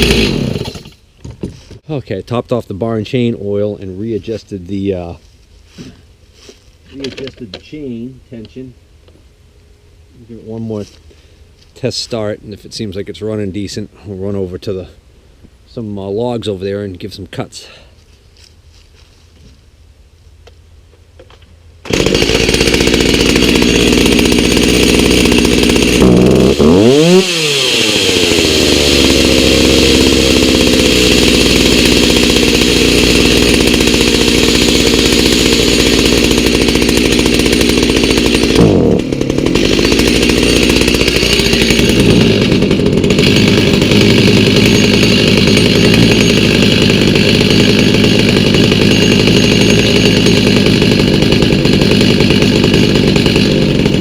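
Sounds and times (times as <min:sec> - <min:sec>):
chainsaw engine running: 0:00.0 - 0:01.0, 0:21.8 - 0:54.0.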